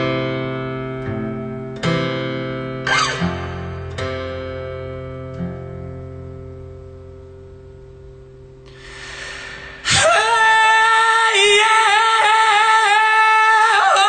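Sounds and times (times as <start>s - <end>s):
acoustic guitar chord: 0.0s - 10.2s
high voice singing long note: 9.4s - 14.0s.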